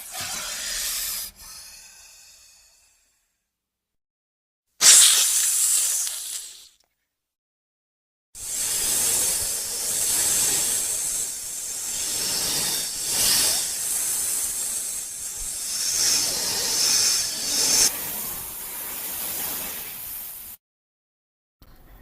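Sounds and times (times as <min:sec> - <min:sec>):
snake hissing: 0:00.0 - 0:03.2, 0:04.8 - 0:06.8, 0:08.4 - 0:20.6.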